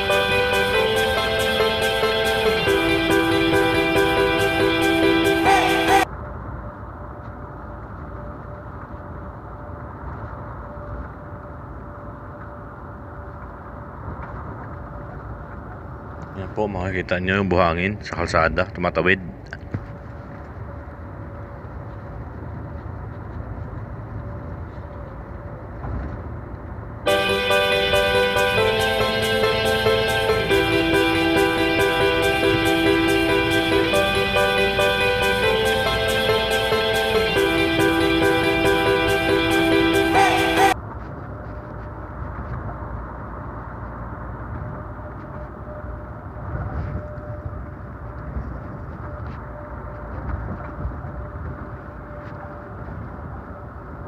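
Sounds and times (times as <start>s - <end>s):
plucked guitar music: 0.0s - 6.0s, 27.1s - 40.8s
vehicle driving on highway: 0.0s - 16.6s, 19.3s - 27.1s, 27.8s - 54.0s.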